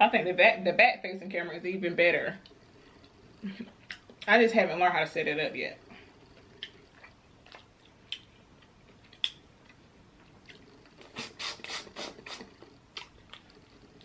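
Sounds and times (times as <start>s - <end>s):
crackling: 5.7s - 14.0s
eating sounds close to microphone: 6.2s - 14.0s.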